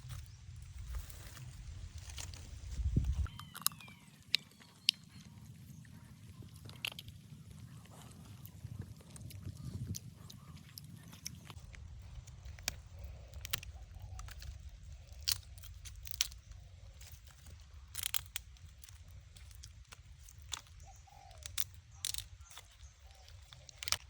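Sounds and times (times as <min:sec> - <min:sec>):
steady low rumble: 0:00.0 - 0:03.3, 0:05.2 - 0:24.0
crunches and sharp clicks: 0:09.1 - 0:24.0.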